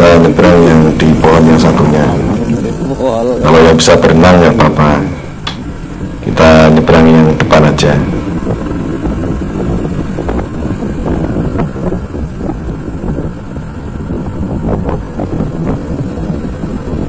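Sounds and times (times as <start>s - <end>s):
wind buffeting microphone: 0.0s - 17.0s
motorcycle running: 5.5s - 17.0s.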